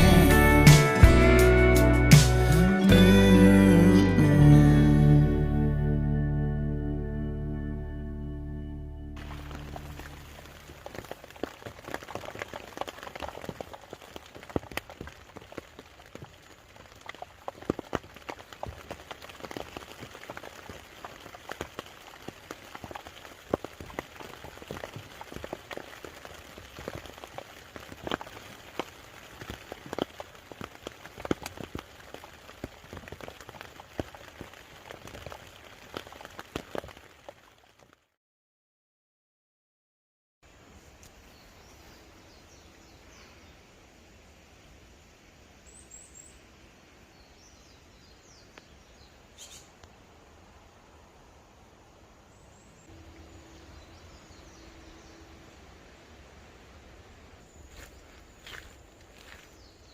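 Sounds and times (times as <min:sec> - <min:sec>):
rain hiss: 0:09.2 - 0:37.9, 0:40.5 - 0:59.9
raindrops pattering: 0:09.2 - 0:38.2, 0:52.3 - 0:59.9.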